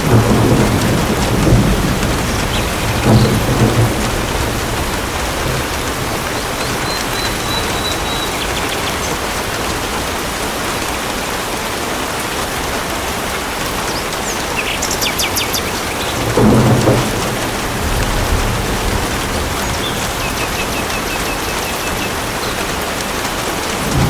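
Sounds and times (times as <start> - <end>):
low rumble of thunder: 0.0 - 10.4, 15.3 - 24.0
heavy rain: 0.0 - 24.0.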